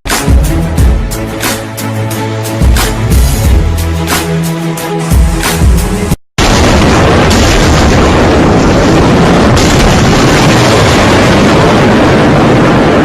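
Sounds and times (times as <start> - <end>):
wind and rain buffeting: 6.4 - 13.0.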